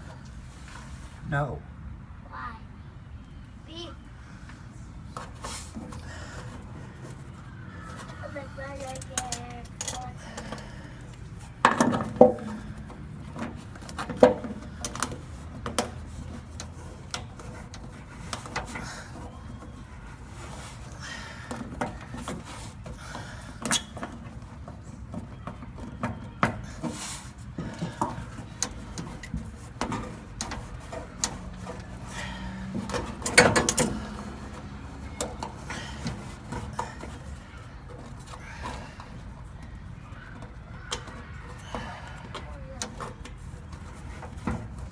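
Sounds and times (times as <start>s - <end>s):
hand tools clinking on metal: 8.7s - 13.0s, 25.6s - 39.0s.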